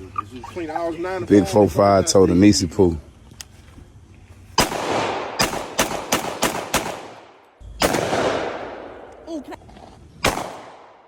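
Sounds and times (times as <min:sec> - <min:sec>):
gunshots with echoing tail: 0:04.6 - 0:09.1, 0:10.2 - 0:11.0.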